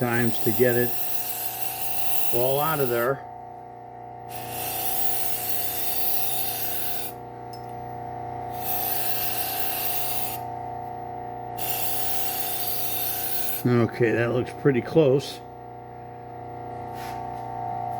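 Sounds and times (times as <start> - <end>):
belt sander humming: 0.0 - 3.4, 4.2 - 17.9
knife rubbing on wheel: 8.6 - 10.4.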